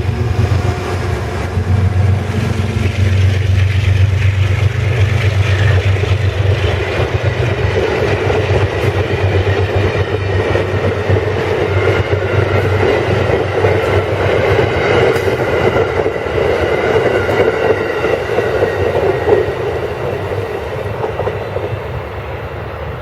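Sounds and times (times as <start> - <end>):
train wheels rushing on rails: 0.0 - 23.0.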